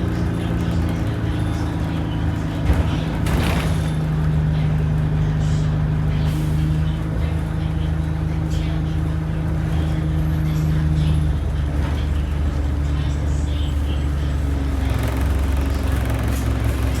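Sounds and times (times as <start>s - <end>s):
vehicle engine running: 0.0s - 17.0s.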